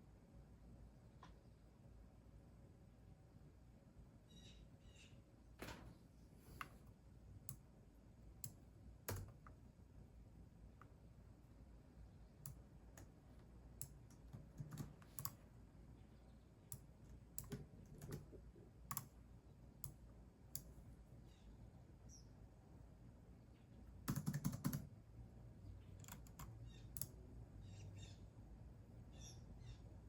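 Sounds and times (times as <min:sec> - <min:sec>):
keyboard keystrokes: 0:08.4 - 0:09.6, 0:13.8 - 0:15.4, 0:17.4 - 0:19.1, 0:24.1 - 0:24.9.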